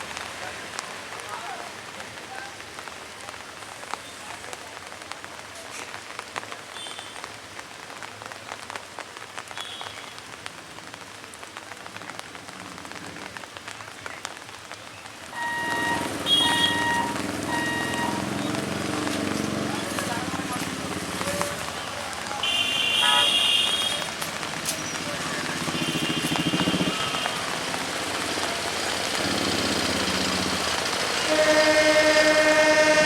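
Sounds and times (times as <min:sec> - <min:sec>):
crackling hiss with clicks: 0:00.0 - 0:32.5
high-pitched horn toots: 0:15.4 - 0:18.7, 0:31.2 - 0:33.0.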